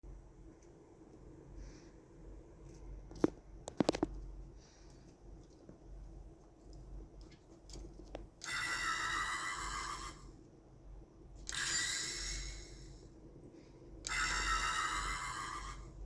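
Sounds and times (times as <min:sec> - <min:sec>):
toy robot electronic sound effect: 0:08.4 - 0:10.2, 0:11.5 - 0:12.7, 0:14.1 - 0:15.8.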